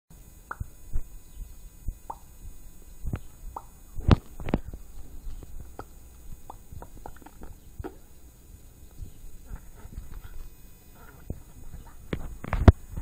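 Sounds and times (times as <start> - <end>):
tongue clicks and lip pops: 0.5 - 1.1, 1.9 - 2.3, 3.1 - 8.0.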